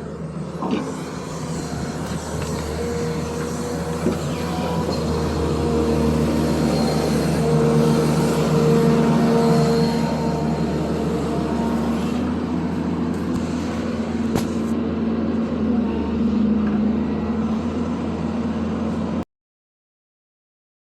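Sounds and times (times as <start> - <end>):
excavator diesel engine running: 0.0 - 19.2.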